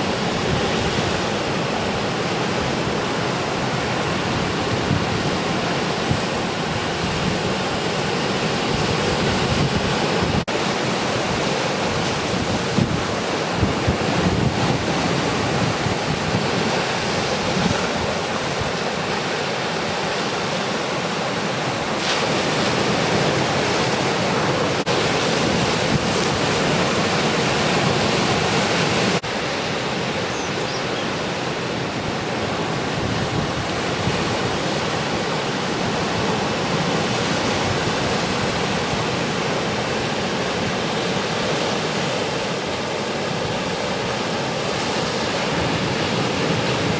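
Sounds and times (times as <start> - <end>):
ocean surf breaking: 0.0 - 46.9
wind buffeting microphone: 11.4 - 20.0, 25.2 - 34.7.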